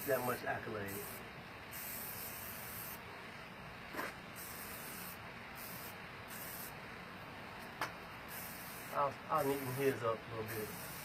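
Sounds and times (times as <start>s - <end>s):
spray paint can hissing: 0.0s - 3.0s, 3.9s - 6.8s, 8.3s - 11.0s.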